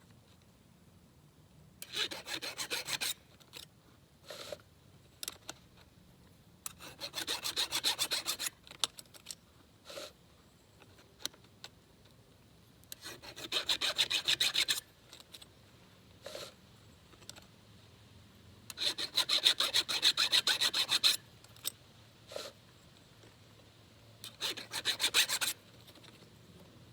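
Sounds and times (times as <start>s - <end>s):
file rasping on chain: 1.8s - 3.2s, 6.7s - 8.6s, 12.9s - 14.8s, 18.7s - 21.2s, 24.2s - 25.6s.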